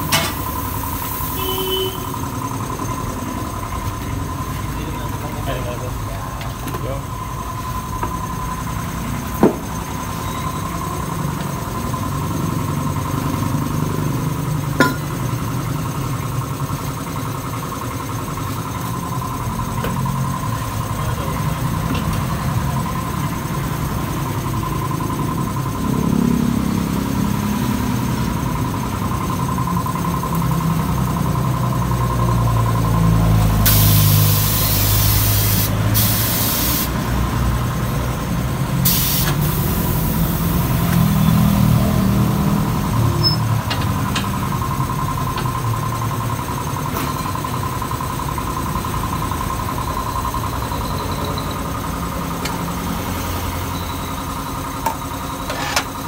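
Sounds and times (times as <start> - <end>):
vehicle engines running: 0.0 - 56.0
compressed air hiss: 33.7 - 37.0, 38.8 - 40.6.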